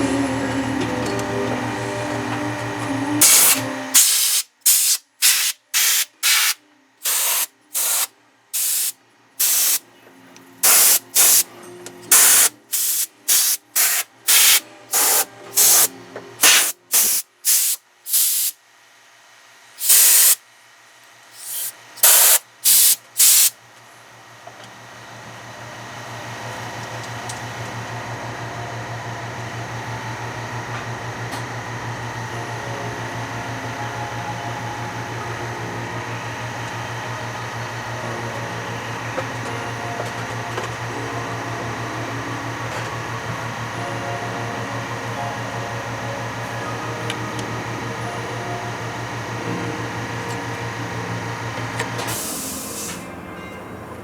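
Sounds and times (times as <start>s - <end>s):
machine hum with low drone: 0.0s - 4.1s, 23.1s - 54.0s
short spray hisses: 3.2s - 9.8s.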